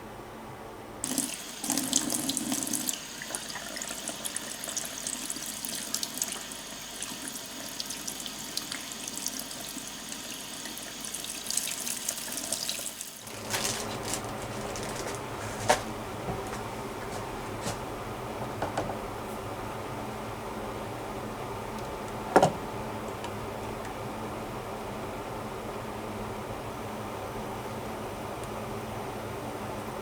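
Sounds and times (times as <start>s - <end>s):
water running into washing machine: 1.0s - 16.6s.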